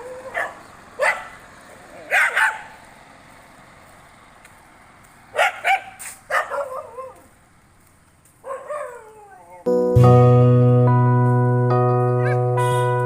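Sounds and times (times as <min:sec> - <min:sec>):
dogs barking and yelping: 0:00.0 - 0:02.8, 0:05.3 - 0:07.4, 0:08.4 - 0:09.7.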